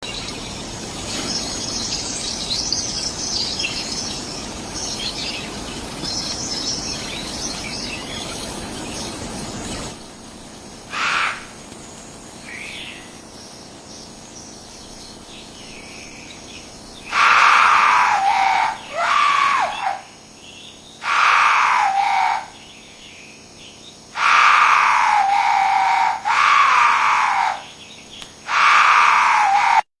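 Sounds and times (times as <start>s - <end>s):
background hiss: 0.1s - 29.8s
animal harsh calls: 10.9s - 11.6s, 17.0s - 20.2s, 21.0s - 22.6s, 24.1s - 27.7s, 28.4s - 29.8s.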